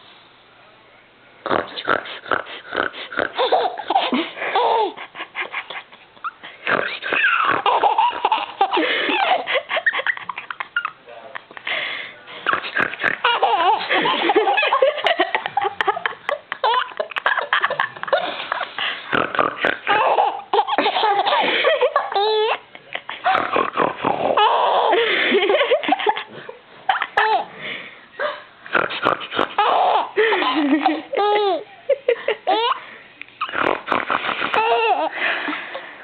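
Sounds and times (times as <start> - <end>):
person laughing hard: 3.4 - 11.6, 12.5 - 27.5, 29.5 - 32.8.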